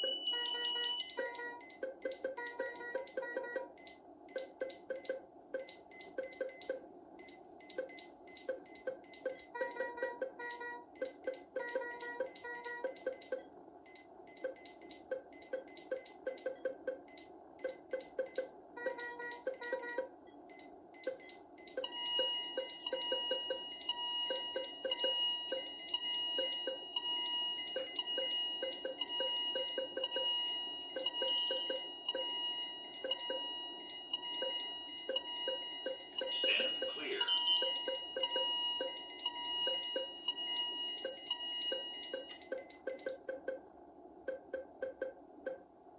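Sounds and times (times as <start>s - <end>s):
high alarm beeps: 0.0s - 3.2s, 17.1s - 45.9s.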